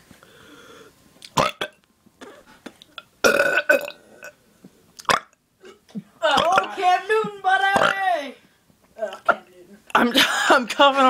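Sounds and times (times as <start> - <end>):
person burping: 1.3 - 4.4, 5.0 - 6.7, 7.7 - 8.0.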